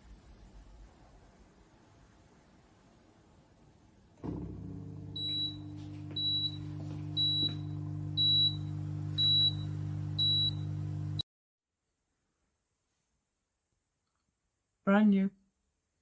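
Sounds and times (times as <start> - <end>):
dishwasher motor hum: 4.2 - 11.2
dishwasher short high beeps: 5.1 - 10.9.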